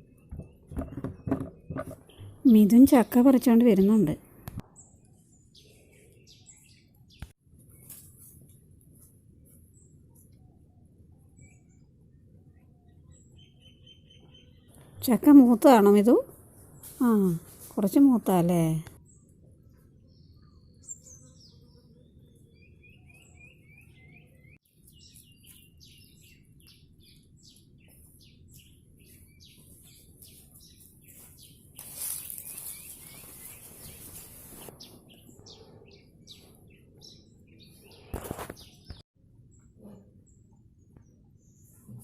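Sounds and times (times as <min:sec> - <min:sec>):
rustling noise: 0:07.5 - 0:09.7, 0:29.1 - 0:35.1, 0:38.0 - 0:39.0
wild birds chirping: 0:09.8 - 0:15.4, 0:19.0 - 0:42.0.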